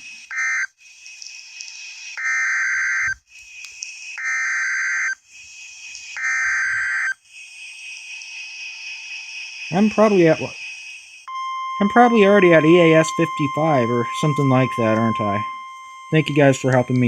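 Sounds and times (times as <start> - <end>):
harsh buzzing data bursts: 0.0 - 17.0.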